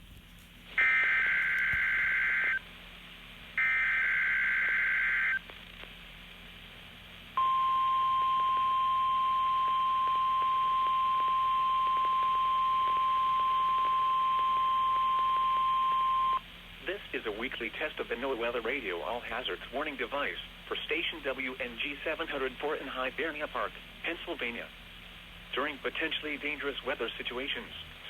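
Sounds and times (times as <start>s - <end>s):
steady warning alarm tone: 0.8s - 2.6s, 3.6s - 5.4s, 7.4s - 16.4s.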